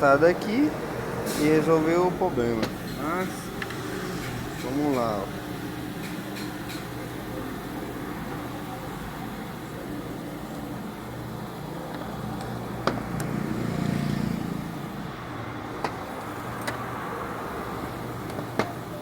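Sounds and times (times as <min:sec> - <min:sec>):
vehicle passing: 0:00.0 - 0:05.3, 0:12.1 - 0:18.2
road vehicle noise: 0:00.0 - 0:19.0
clicks of engine parts handled: 0:18.2 - 0:18.8.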